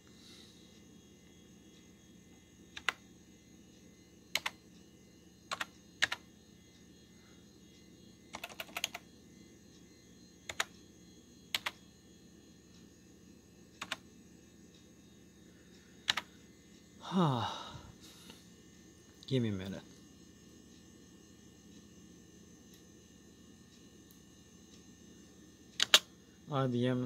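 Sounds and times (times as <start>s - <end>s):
steady low hum: 0.0s - 27.0s
keyboard keys clicking: 2.8s - 3.0s, 4.4s - 4.6s, 5.5s - 6.2s, 8.3s - 9.0s, 10.5s - 10.7s, 11.5s - 11.8s, 13.8s - 14.0s, 25.8s - 26.0s.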